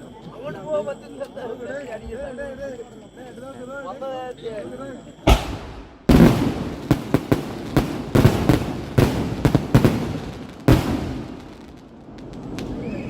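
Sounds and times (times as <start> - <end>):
loud firework blasts: 5.3 - 13.0
sharp firework cracks: 5.3 - 13.0.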